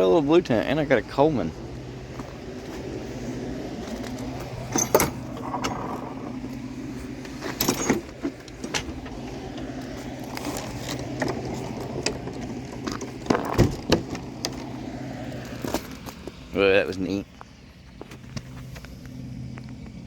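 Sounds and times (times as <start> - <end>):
vehicle engine hum: 0.0 - 20.0
light rattles and jangling clicks: 3.8 - 6.6.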